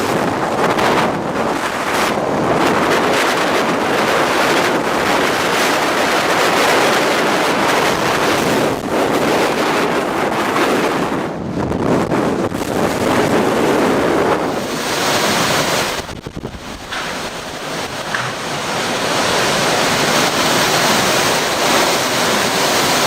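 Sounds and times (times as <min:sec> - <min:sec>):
hurricane wind: 0:00.0 - 0:23.0
rain beating on a car: 0:14.4 - 0:23.0.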